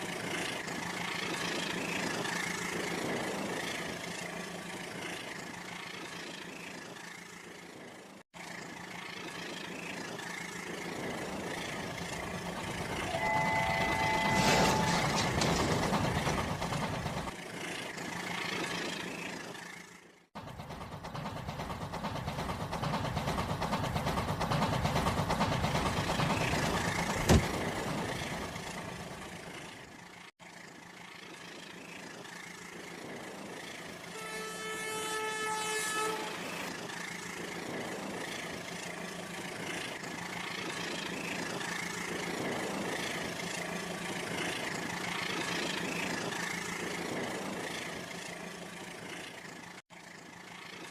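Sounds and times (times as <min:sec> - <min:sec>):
vehicle rumble: 0:00.0 - 0:50.9
vehicle horn: 0:13.0 - 0:15.3, 0:34.1 - 0:36.7.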